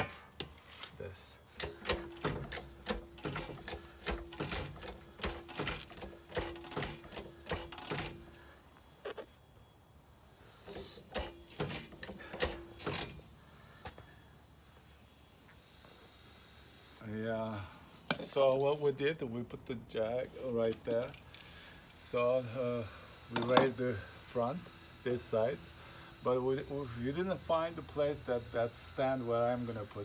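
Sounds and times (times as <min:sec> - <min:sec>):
faint steady squeal: 0:12.2 - 0:17.7, 0:21.4 - 0:30.0.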